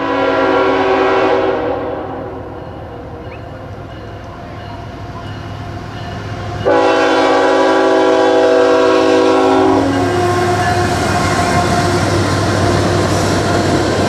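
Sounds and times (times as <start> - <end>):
locomotive air horn: 0.0 - 2.6, 6.6 - 12.3
train rumble: 0.0 - 14.0
freight cars rolling on rails: 9.6 - 14.0.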